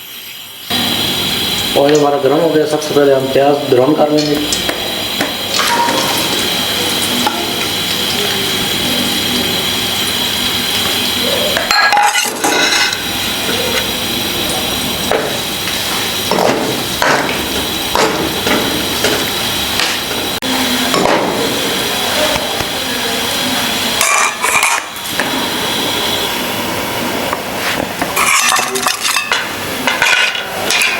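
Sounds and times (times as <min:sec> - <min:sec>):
onions sizzling in oil: 0:00.0 - 0:22.7, 0:23.4 - 0:30.9
metal spoon scraping pot: 0:27.6 - 0:30.9.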